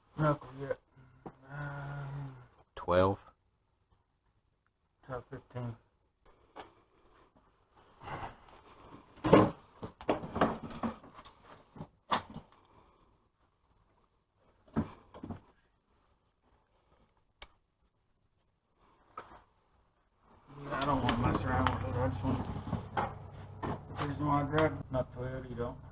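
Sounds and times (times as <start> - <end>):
metal hand tools clinking: 20.7 - 24.2
sharp knocks: 21.1 - 24.8.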